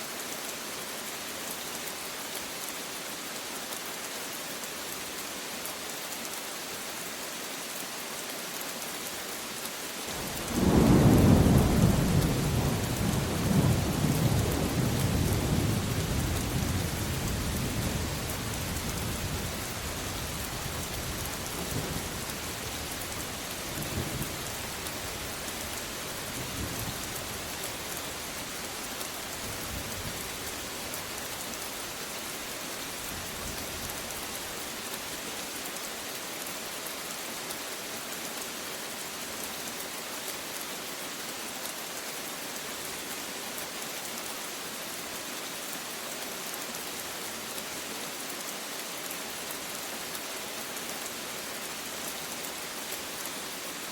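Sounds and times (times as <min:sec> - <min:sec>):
steady rain falling: 0:00.0 - 0:53.9
low rolling thunder: 0:10.3 - 0:19.4.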